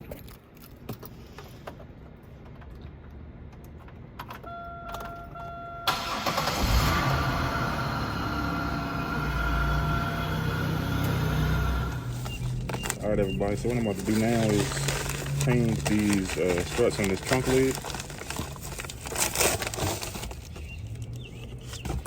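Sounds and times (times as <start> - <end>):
car warning chime: 4.5 - 6.5, 9.7 - 10.8
car engine cranking and idling: 5.9 - 22.0.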